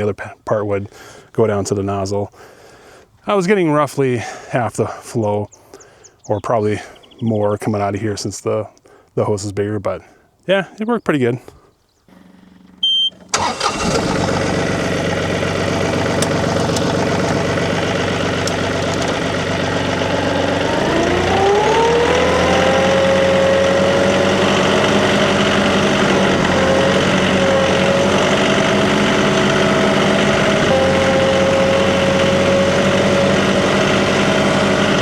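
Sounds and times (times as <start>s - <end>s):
tractor engine running: 12.1s - 35.0s.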